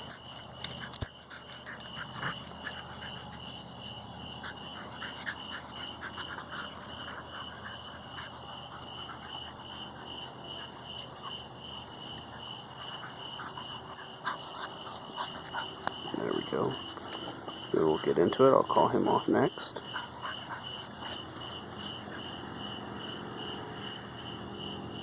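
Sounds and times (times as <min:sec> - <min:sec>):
faint rustles and clicks: 0:11.0 - 0:17.8.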